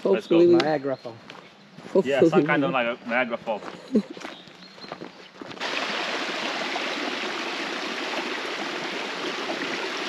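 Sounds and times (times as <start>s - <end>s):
stream water rushing: 5.6s - 10.0s.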